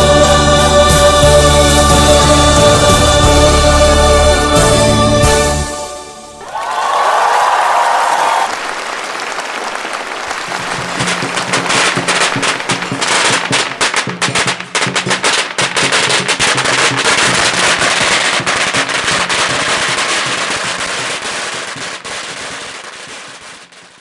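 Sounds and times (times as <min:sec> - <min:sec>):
music: 0:00.0 - 0:06.4, 0:10.6 - 0:17.5
firecrackers crackling: 0:06.4 - 0:24.0.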